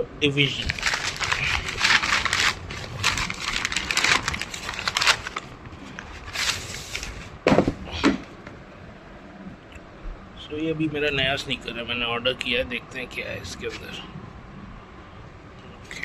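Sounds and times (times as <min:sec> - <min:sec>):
packaging crinkling rustle: 0:00.5 - 0:07.4.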